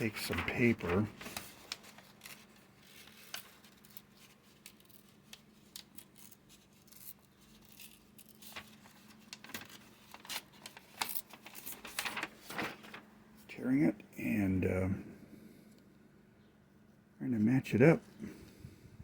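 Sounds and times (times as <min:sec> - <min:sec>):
paper tearing: 0:00.0 - 0:13.0.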